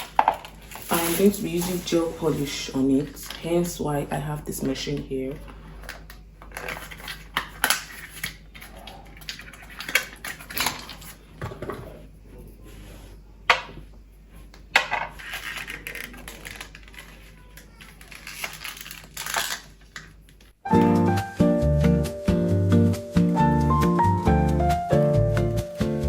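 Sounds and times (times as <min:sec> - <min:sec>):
rustling: 0:00.0 - 0:03.7.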